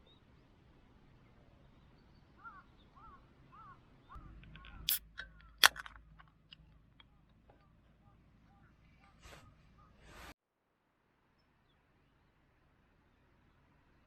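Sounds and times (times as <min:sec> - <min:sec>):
loud sharp clicks: 0:04.4 - 0:06.8.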